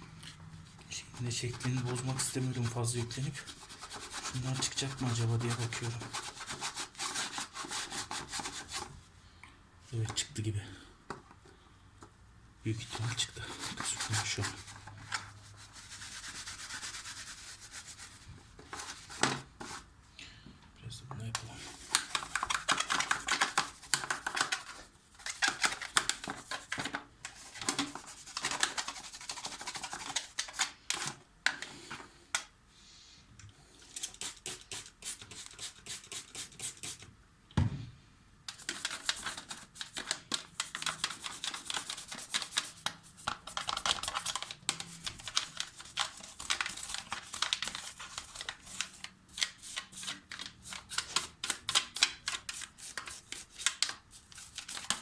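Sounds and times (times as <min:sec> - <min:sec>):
dull thump: 0:37.6 - 0:37.9.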